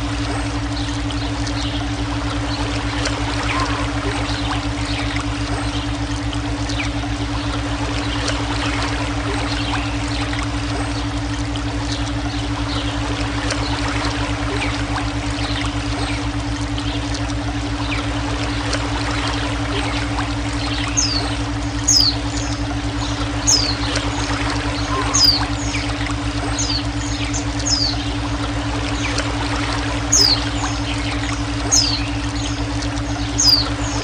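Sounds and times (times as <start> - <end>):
pulsing electronic drone: 0.0 - 34.0
water trickling and splashing: 0.0 - 34.0
bird whistling: 20.9 - 22.5, 23.4 - 23.8, 24.8 - 25.8, 26.6 - 28.0, 30.1 - 30.9, 31.7 - 32.6, 33.2 - 34.0.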